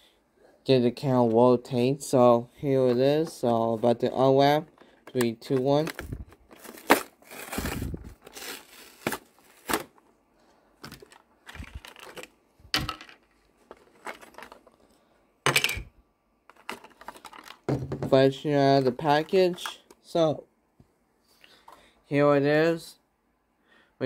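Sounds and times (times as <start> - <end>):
package crinkling: 6.0 - 9.9
plastic package tearing: 6.5 - 9.9.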